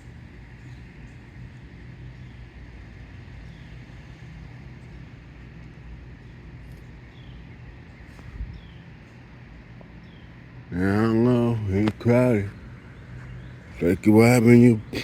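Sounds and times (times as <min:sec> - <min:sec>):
birds chirping: 0:00.0 - 0:15.0
low engine rumble: 0:00.0 - 0:15.0.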